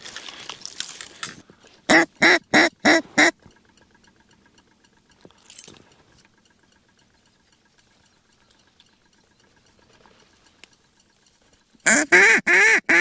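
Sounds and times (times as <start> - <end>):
faint fast regular ticking: 0.7 - 13.0
duck call quacks: 1.9 - 3.4, 11.8 - 13.0.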